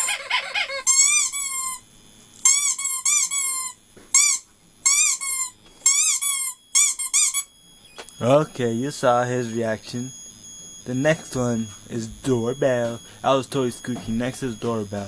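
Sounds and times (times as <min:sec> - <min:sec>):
squeaky dog toy squeaks: 0:00.0 - 0:01.8, 0:02.4 - 0:07.5.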